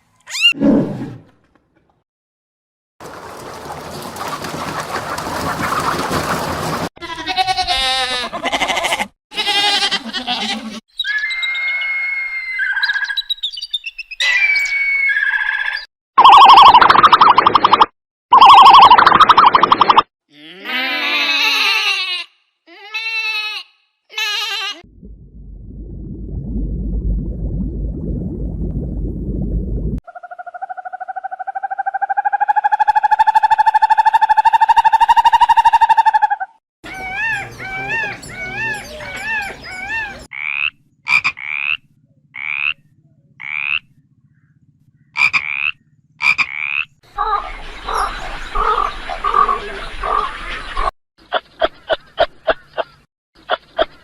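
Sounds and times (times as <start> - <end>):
animal bleating: 7.0 - 10.8, 20.3 - 24.8
animal chirps: 10.9 - 17.8
low rumbling noise: 24.9 - 30.0.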